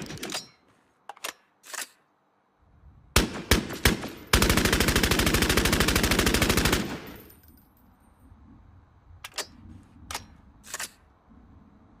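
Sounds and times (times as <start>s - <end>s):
submachine gun automatic fire: 3.2s - 7.2s.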